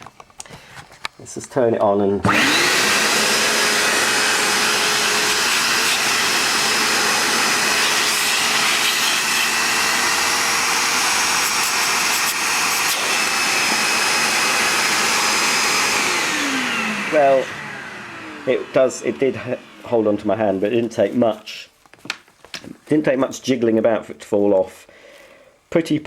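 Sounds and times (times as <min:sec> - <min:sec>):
vacuum motor whine: 0:02.2 - 0:20.3.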